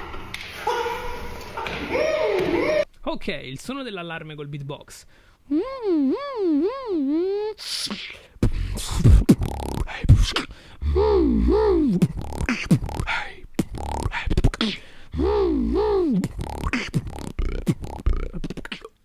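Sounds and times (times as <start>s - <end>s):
percussive mouth clicks: 5.5s - 19.0s
beatboxed siren whoops: 5.6s - 7.6s, 8.4s - 18.9s
low bass hum: 8.4s - 18.5s.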